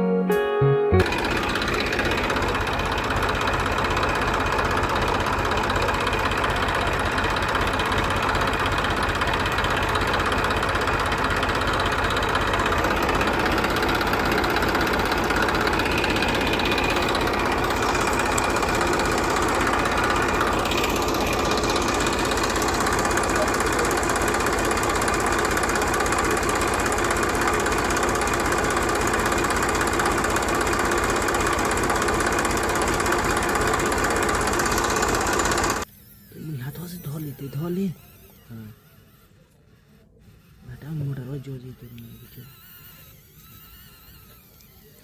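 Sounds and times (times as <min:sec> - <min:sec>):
guitar music: 0:00.0 - 0:01.2
small motor chugging: 0:01.0 - 0:45.0.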